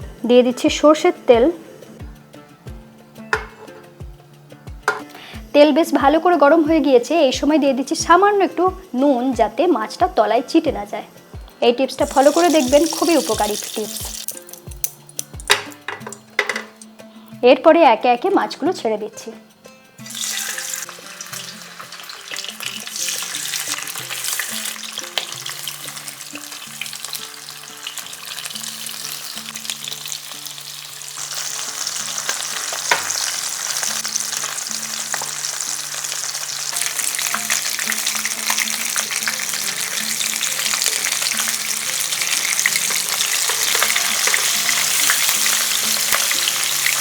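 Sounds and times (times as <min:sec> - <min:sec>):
soft background music: 0:00.0 - 0:47.0
fish sizzling and crackling in oil: 0:12.0 - 0:16.9, 0:20.0 - 0:47.0.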